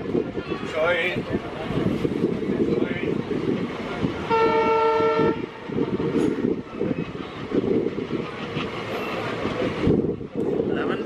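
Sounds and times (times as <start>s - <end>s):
train wheels rumbling on rail: 0.0s - 11.0s
train horn blast: 4.2s - 5.7s.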